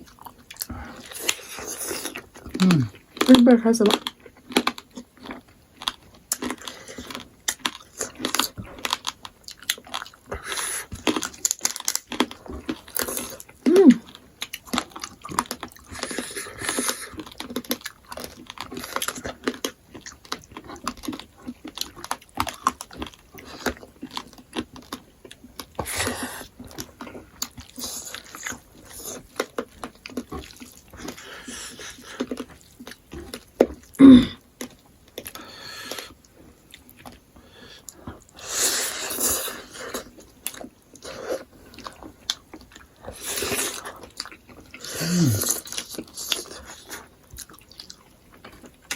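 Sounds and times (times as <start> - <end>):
chewing and mouth noises: 0.0 - 48.9
short voiced sound: 13.7 - 14.0.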